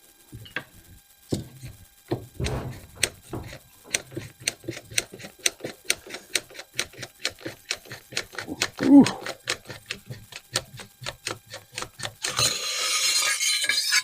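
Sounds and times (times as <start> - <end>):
metal scraping: 1.6 - 5.4, 12.2 - 14.0
metal knocks: 2.1 - 4.4
ratchet-like clicking: 2.4 - 12.9.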